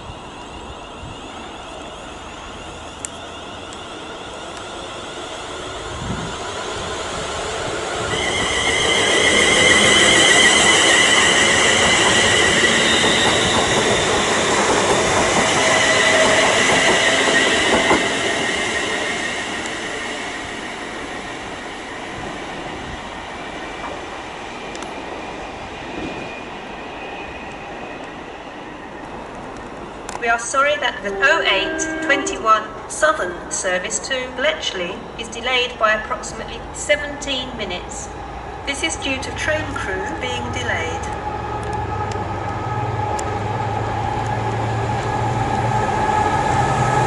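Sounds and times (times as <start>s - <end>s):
train wheels rumbling on rail: 0.0s - 30.9s, 33.1s - 47.0s
high wavering whine: 30.9s - 33.6s.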